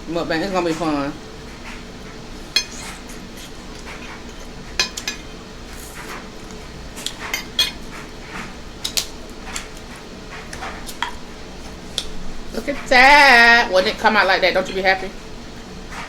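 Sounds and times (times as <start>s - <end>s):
cutlery clinking on a plate: 2.4s - 12.2s.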